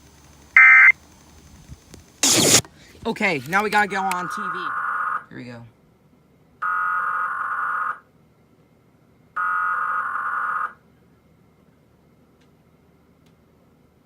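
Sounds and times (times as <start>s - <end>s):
buzzy digital data bursts: 0.0s - 2.6s.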